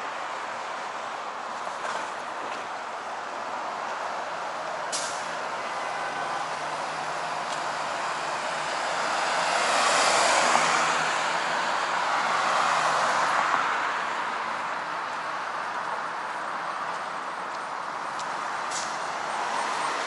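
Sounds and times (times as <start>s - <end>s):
cars passing: 0.0s - 20.0s.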